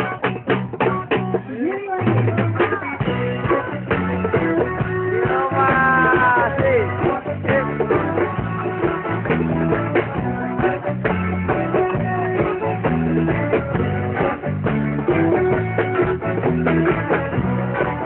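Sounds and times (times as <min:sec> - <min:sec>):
bass guitar: 0:00.0 - 0:18.0
strummed guitar: 0:00.0 - 0:18.0.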